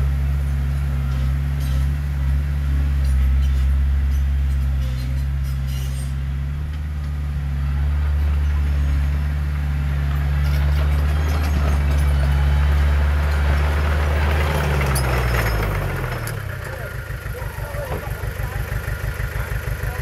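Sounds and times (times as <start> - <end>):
heavy diesel engine running: 0.0 - 20.0
faint rattles and clanks: 9.9 - 20.0.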